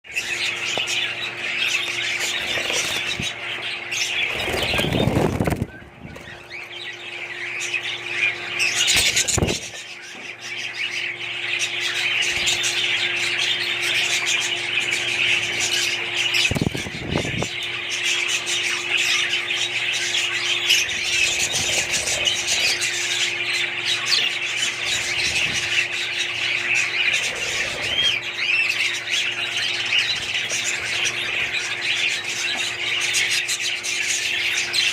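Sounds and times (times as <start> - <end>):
budgies chattering and chirping: 0.1 - 34.9
wing flutters: 1.9 - 6.6, 8.8 - 9.8, 20.7 - 23.0.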